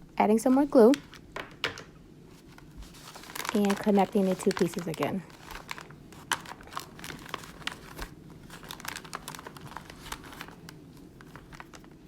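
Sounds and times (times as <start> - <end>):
chip bag crinkling: 2.4 - 12.0.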